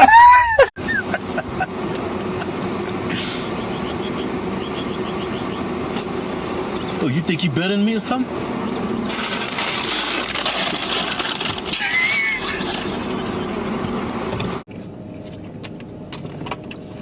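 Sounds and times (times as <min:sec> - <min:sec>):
man wheezing laughter: 0:11.7 - 0:13.6.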